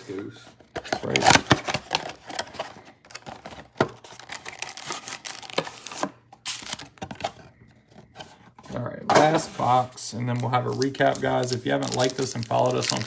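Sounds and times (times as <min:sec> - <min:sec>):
card pack wrappers crinkling: 0:01.0 - 0:07.3, 0:09.6 - 0:13.0
cards being handled: 0:09.3 - 0:13.0.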